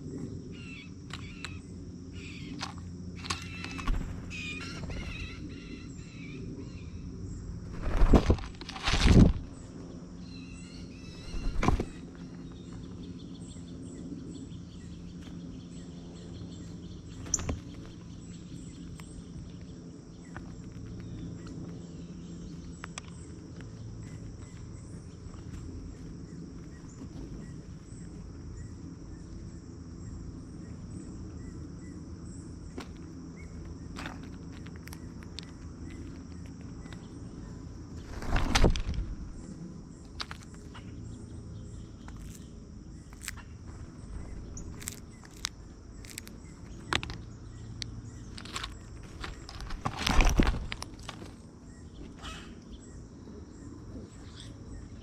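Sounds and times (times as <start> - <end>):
insect drone: 0.0 - 55.0
faint bird chirps: 0.1 - 7.4, 9.5 - 32.8, 51.6 - 55.0.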